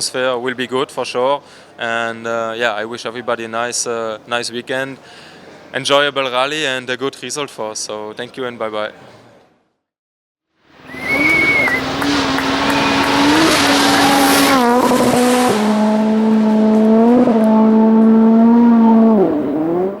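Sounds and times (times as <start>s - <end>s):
rally car engine at full throttle: 10.9s - 20.0s.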